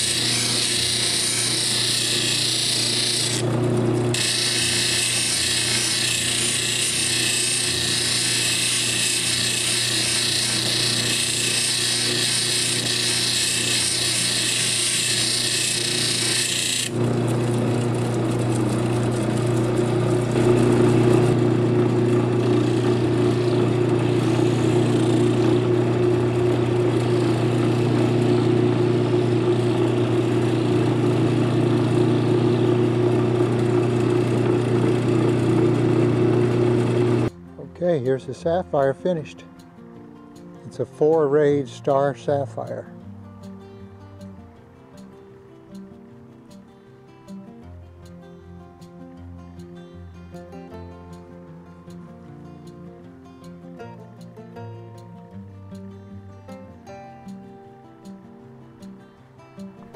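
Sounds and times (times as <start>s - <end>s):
stone scraping on spinning lap: 0.0s - 32.8s
motor humming: 0.0s - 37.3s.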